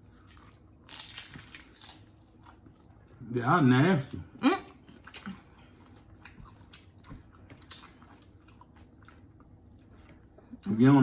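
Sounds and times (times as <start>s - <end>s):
chewing and wet mouth noises: 4.7s - 10.8s.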